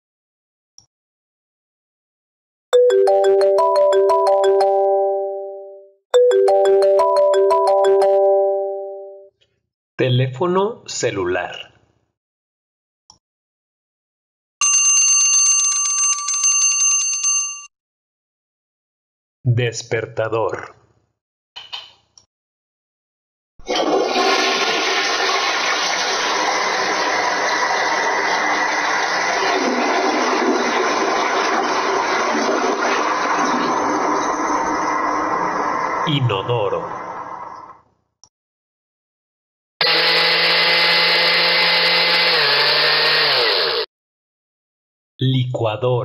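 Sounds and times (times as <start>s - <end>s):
toilet flushing water rush: 23.6s - 36.2s, 36.8s - 37.8s
blender motor whining: 23.7s - 36.0s, 39.8s - 43.9s.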